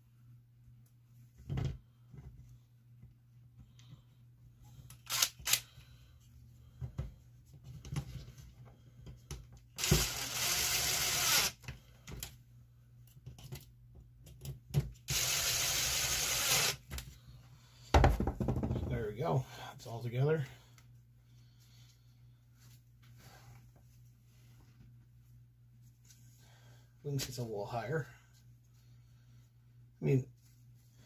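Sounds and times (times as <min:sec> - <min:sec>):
cordless drill driving screws: 0:05.0 - 0:05.6, 0:09.8 - 0:11.6, 0:15.1 - 0:16.8.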